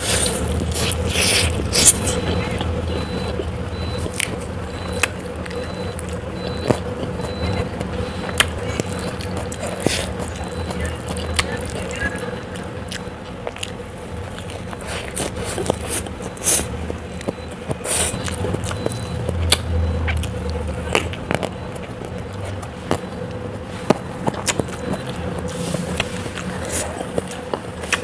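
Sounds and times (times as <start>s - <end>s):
chewing with mouth clicks: 0.0s - 28.0s
crunching bites: 0.0s - 28.0s
faint hum: 0.0s - 28.0s.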